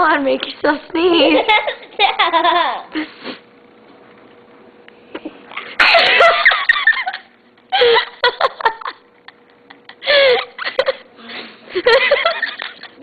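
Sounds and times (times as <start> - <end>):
girl giggling and laughing: 1.1 - 3.0, 5.7 - 11.1, 11.7 - 13.0.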